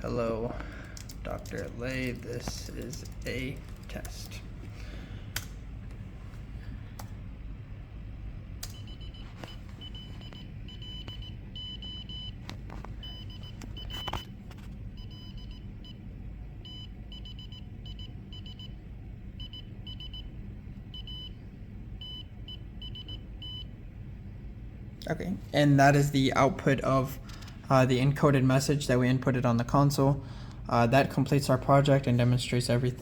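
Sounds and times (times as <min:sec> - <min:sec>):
steady low hum: 0:00.0 - 0:33.0
clicks: 0:00.6 - 0:04.4, 0:05.3 - 0:06.0, 0:08.6 - 0:08.8.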